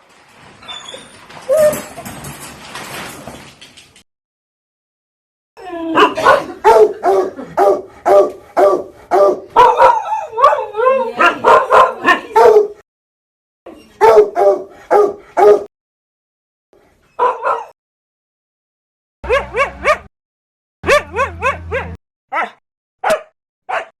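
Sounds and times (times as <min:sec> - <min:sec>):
dog barking: 0:05.9 - 0:12.8, 0:14.0 - 0:15.7, 0:17.2 - 0:17.8, 0:19.2 - 0:20.1, 0:20.8 - 0:24.0.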